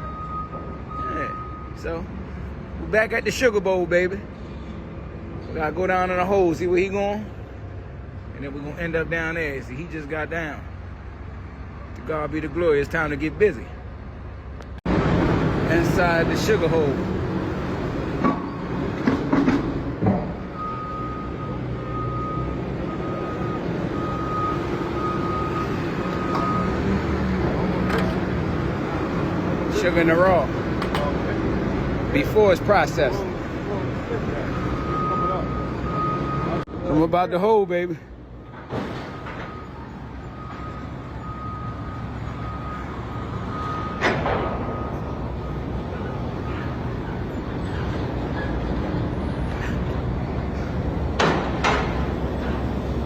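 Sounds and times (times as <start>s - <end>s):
reversing alarm beeping: 0.0s - 2.5s, 20.3s - 27.2s, 34.1s - 36.7s, 39.0s - 49.7s
heavy machinery rumbling: 12.7s - 36.9s, 38.1s - 53.0s.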